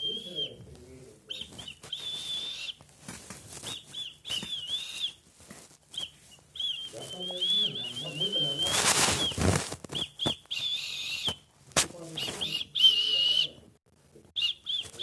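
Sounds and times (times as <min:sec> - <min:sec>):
high-pitched whistling: 0:00.0 - 0:00.6, 0:03.6 - 0:05.2, 0:06.0 - 0:11.4.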